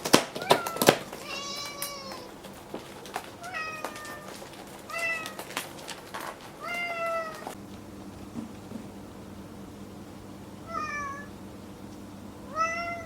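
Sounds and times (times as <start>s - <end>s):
cat meowing: 0.4s - 2.3s, 3.4s - 5.5s, 6.6s - 7.6s, 10.7s - 11.3s, 12.5s - 13.0s.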